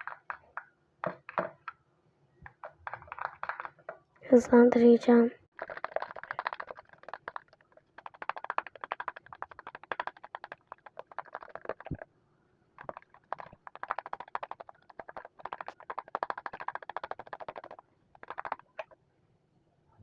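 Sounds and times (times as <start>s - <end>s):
rapid clicking and squelching: 0.0s - 1.8s, 2.4s - 4.0s, 5.5s - 12.1s, 12.8s - 19.0s
spoon stirring slime: 2.4s - 4.0s, 5.5s - 12.1s, 12.8s - 19.0s.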